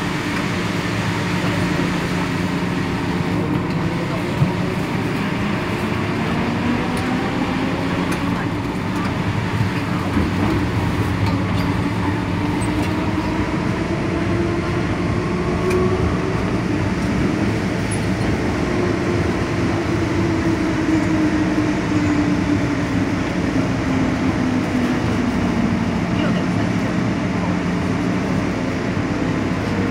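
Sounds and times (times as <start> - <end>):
subway wheels and motors rumbling: 0.0 - 29.9.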